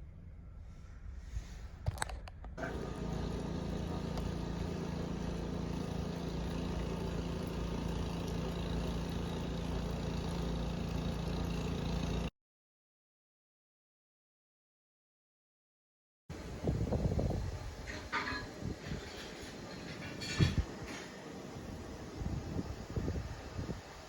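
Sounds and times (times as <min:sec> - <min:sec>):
engine humming: 0:02.6 - 0:12.3, 0:16.3 - 0:24.0.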